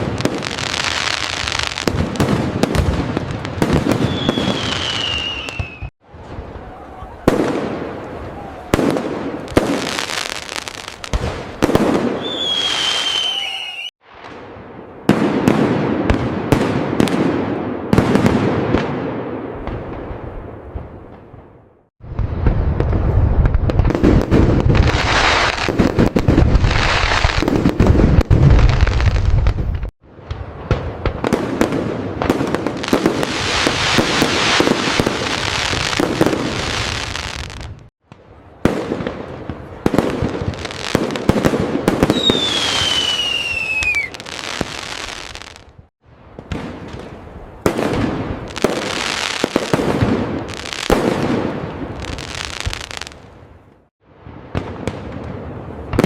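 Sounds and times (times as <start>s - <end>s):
fireworks crackling and popping: 0.0s - 21.3s, 22.0s - 56.0s
fireworks low booms: 0.0s - 56.0s
falling firework whistle: 3.7s - 7.5s, 11.9s - 14.4s, 41.9s - 45.6s.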